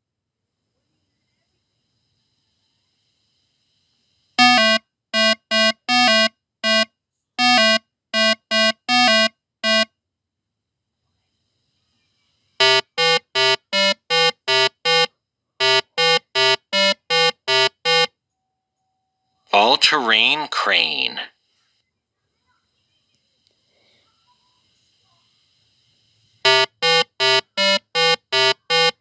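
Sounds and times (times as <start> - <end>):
buzzer alarm beeping: 4.4 - 9.9, 12.6 - 18.1, 26.5 - 29.0.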